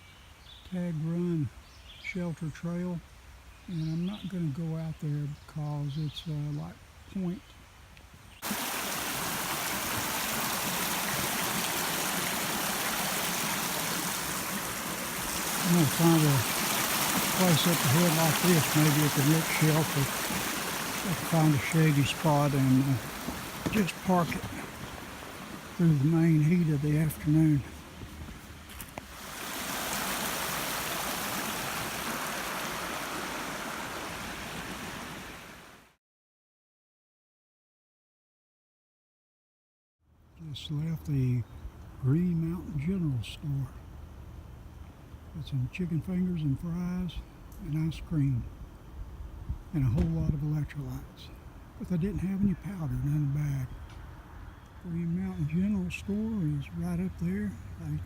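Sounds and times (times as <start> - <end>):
stream rushing and splashing: 8.4 - 36.0.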